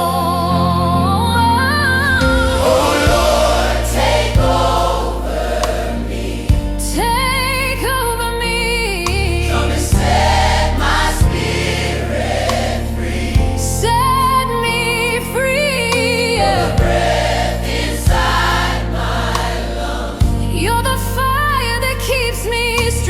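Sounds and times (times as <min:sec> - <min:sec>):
gospel worship song: 0:00.0 - 0:23.0
lead voice singing with vibrato: 0:00.0 - 0:23.0
steady bass: 0:00.0 - 0:23.0
backing choir: 0:01.8 - 0:07.5, 0:09.1 - 0:14.6, 0:15.5 - 0:20.6
drum hits: 0:02.2 - 0:05.0.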